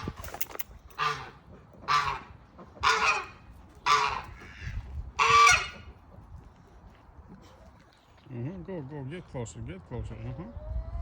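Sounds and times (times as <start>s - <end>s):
farm fowl calling: 1.0s - 6.0s.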